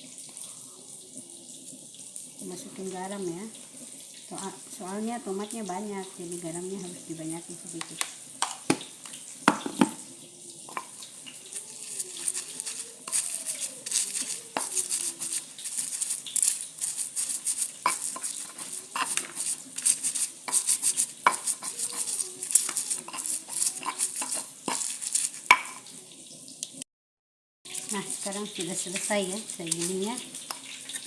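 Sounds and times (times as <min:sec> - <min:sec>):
pestle grinding in mortar: 0:10.7 - 0:25.9.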